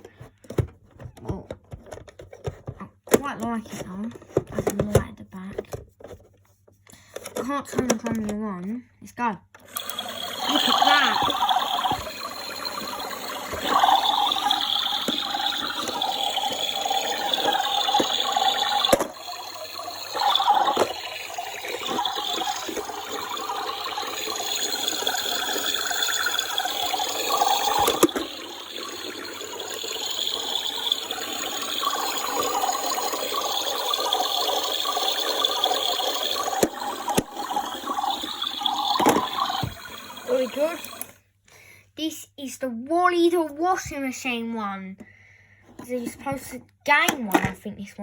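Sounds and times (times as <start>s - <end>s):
toy washing machine running: 9.6s - 41.2s.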